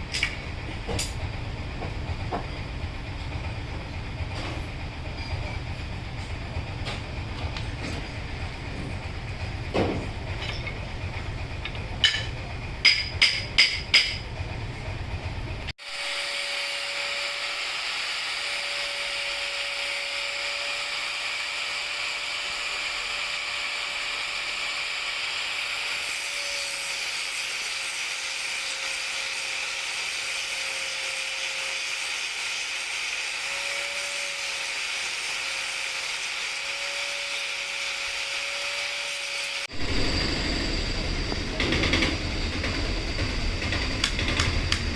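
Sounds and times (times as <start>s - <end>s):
machine humming: 36.6s - 44.9s
low rumble: 39.7s - 44.9s.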